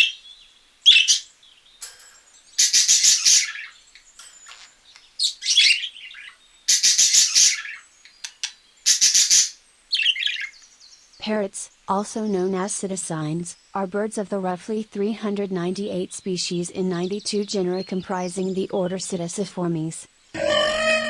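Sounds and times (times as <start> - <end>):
high squeaky chirps: 0.9 - 10.7
harsh animal squawks: 20.4 - 21.0.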